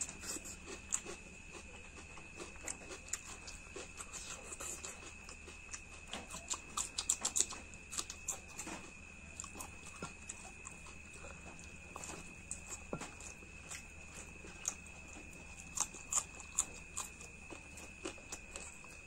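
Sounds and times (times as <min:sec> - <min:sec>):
person chewing and lip-smacking: 0:00.0 - 0:19.0.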